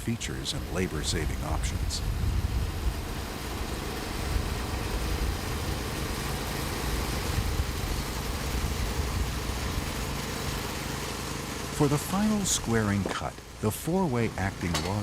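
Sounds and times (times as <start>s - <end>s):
sawmill engine running: 0.0s - 15.0s.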